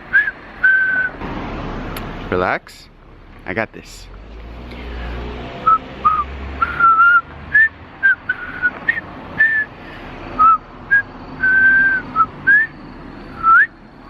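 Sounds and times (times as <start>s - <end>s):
person whistling: 0.1s - 1.2s, 5.6s - 9.7s, 10.4s - 12.8s, 13.4s - 13.7s.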